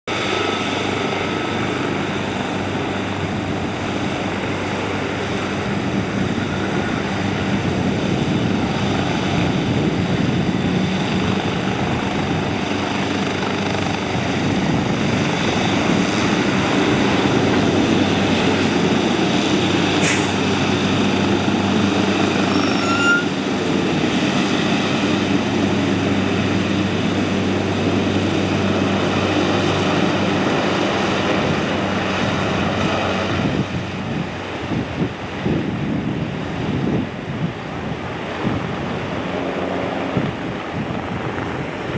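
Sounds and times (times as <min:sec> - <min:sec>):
helicopter rotors and turbine engine: 0:00.1 - 0:41.9.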